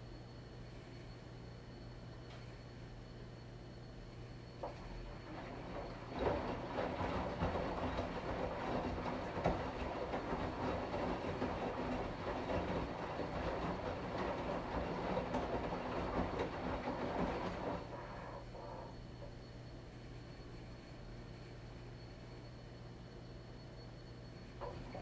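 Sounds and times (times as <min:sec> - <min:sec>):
washing machine drum churning: 0:04.6 - 0:18.9, 0:24.6 - 0:25.0
washing machine motor hum: 0:04.6 - 0:19.8, 0:24.6 - 0:25.0.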